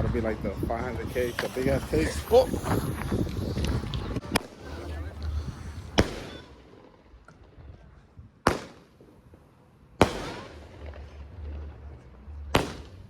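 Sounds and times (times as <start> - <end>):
firework bangs with echo: 5.9 - 7.0, 8.4 - 9.3, 10.0 - 11.2, 12.6 - 13.0.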